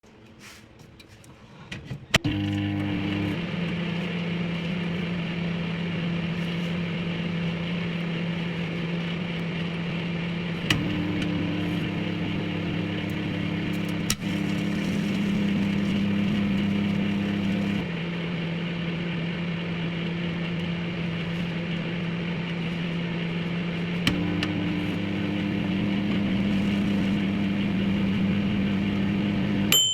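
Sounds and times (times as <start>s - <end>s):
microwave oven humming: 2.2s - 29.9s.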